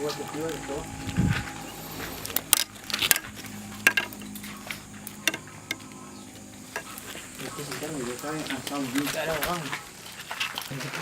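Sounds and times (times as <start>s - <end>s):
sharp clicks and clinks: 2.0s - 6.0s.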